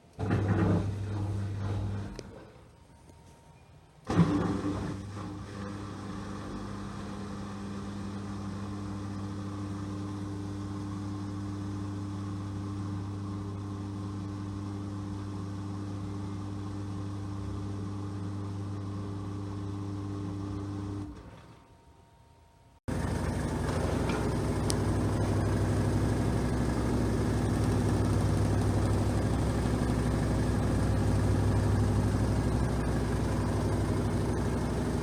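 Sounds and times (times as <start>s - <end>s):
washing machine humming: 0.0s - 2.7s, 4.0s - 21.5s, 22.9s - 35.0s.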